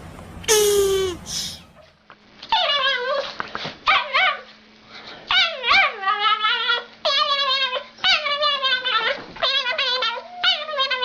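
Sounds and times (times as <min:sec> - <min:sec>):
dog howling: 0:05.3 - 0:11.0.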